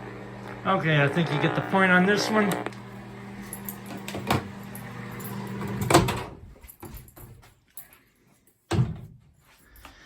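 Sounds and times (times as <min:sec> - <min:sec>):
microwave oven humming: 0:00.0 - 0:06.3.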